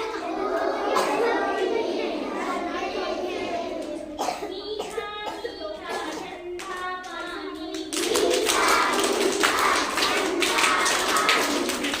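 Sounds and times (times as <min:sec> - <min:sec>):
children chanting: 0:00.0 - 0:04.4, 0:07.5 - 0:12.0
children clapping: 0:03.4 - 0:04.1, 0:05.9 - 0:12.0.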